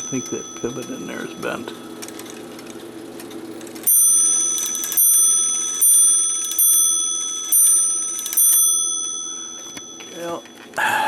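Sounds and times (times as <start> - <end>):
clock striking bell: 0.0 - 2.0, 3.8 - 10.7.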